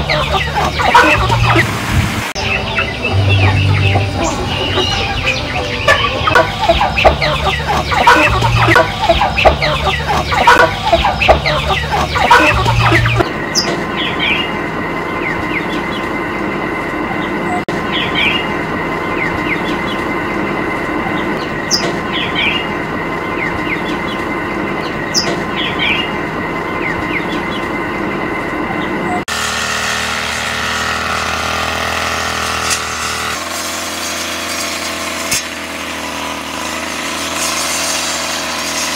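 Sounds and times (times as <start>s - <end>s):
poultry clucking: 0.0s - 1.7s, 2.4s - 13.8s
short rising calls: 0.0s - 13.3s
steady hum: 0.0s - 13.6s.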